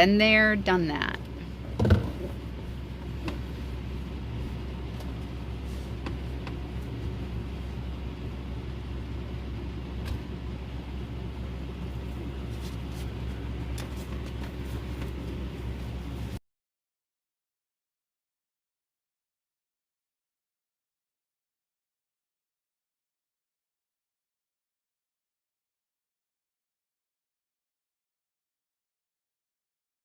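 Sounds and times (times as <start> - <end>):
low mechanical hum: 0.0 - 16.4.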